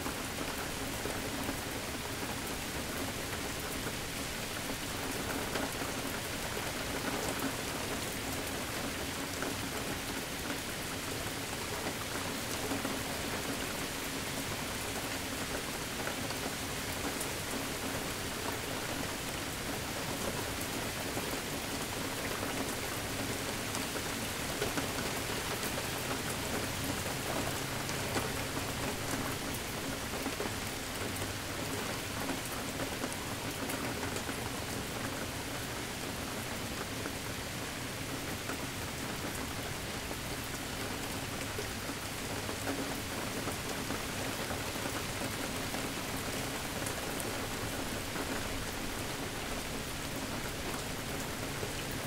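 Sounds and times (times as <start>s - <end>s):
rain pattering: 0.0s - 52.0s.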